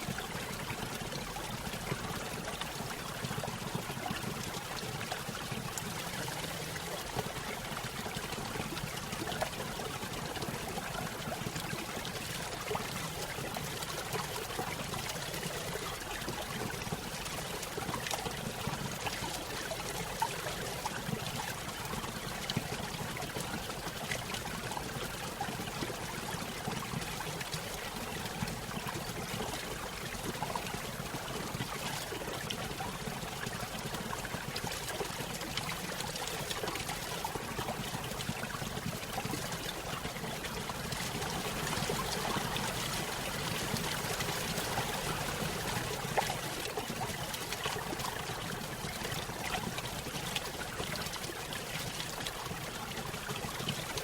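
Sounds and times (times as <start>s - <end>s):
stream over small waterfall: 0.0s - 54.0s.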